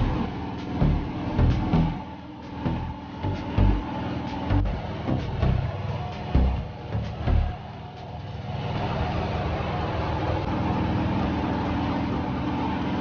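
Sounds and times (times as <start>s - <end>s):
dull low thumps: 0.0s - 7.7s
steady motor hum: 0.0s - 13.0s.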